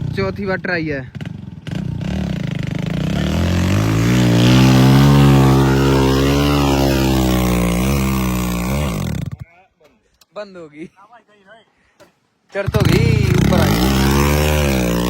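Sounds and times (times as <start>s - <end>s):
vehicle engine revving hard: 1.7s - 9.4s, 12.8s - 15.0s.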